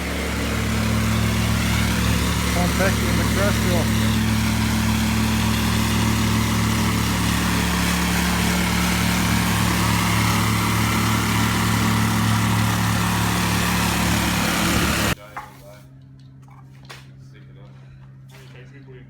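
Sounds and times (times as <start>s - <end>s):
compactor engine running: 0.0s - 15.2s.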